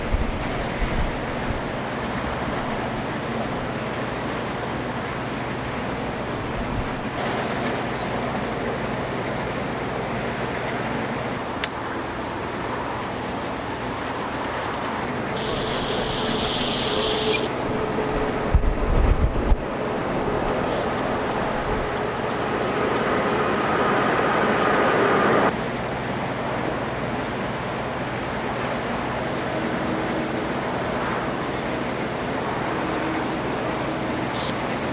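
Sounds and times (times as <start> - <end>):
strong wind: 0.0 - 4.2, 15.0 - 25.5
jet engines roaring: 15.0 - 25.7
faint tone: 15.4 - 18.7.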